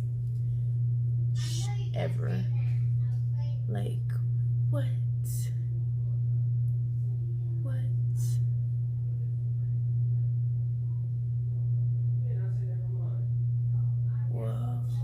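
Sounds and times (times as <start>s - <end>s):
low electrical hum: 0.0s - 15.0s
faint voice: 1.4s - 4.1s.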